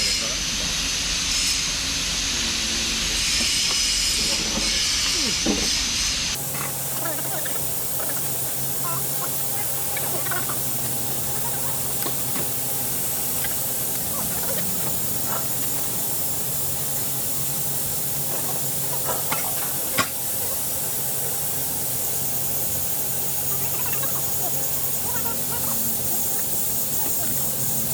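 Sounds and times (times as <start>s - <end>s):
steady hiss: 6.1s - 27.9s.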